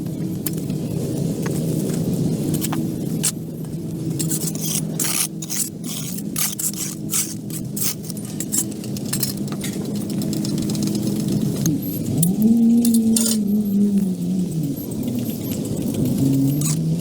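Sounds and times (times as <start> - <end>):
scraping and clattering: 4.1 - 17.0
motor humming: 10.4 - 17.0.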